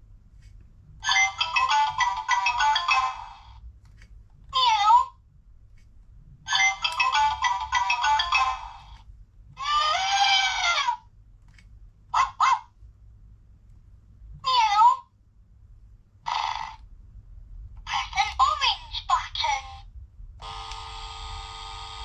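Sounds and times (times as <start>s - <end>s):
tinny toy phone ringtone jingle: 1.2s - 3.6s, 6.6s - 8.9s.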